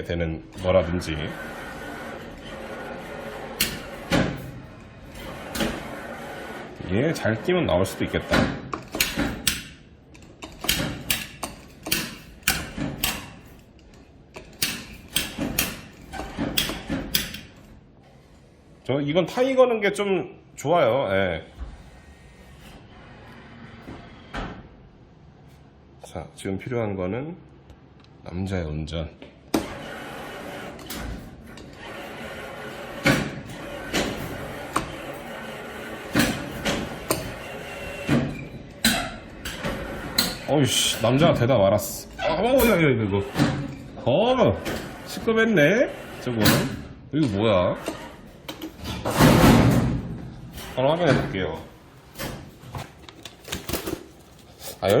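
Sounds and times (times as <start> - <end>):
claw machine clicking: 8.8 - 17.6.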